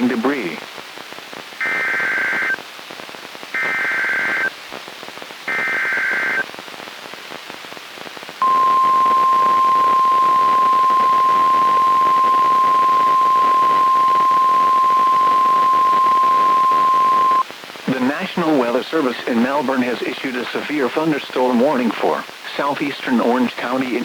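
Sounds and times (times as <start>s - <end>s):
radio static hiss: 0.0s - 24.0s
data bursts: 8.4s - 17.4s
steady warning alarm tone: 8.4s - 17.4s.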